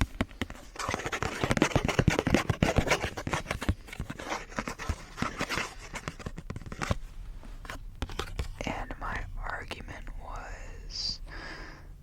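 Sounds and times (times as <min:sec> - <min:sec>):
tapping and scratching on a card: 0:00.0 - 0:07.0, 0:07.6 - 0:08.6.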